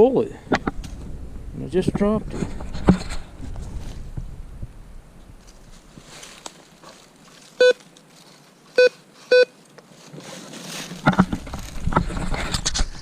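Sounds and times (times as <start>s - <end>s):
rustling and scraping in leaves: 2.3s - 4.2s, 5.4s - 13.0s
metal detector beeps: 7.6s - 7.8s, 8.8s - 9.6s.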